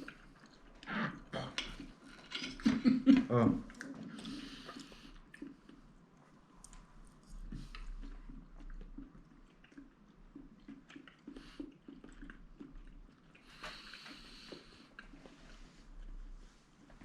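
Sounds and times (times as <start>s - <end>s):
person chewing meat: 0.0s - 2.7s, 3.6s - 16.2s.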